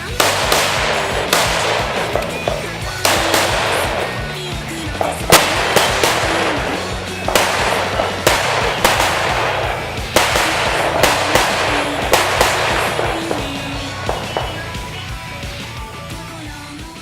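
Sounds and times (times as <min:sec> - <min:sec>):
rifle shots with echo: 0:00.0 - 0:15.8
background music with beat: 0:00.0 - 0:17.0.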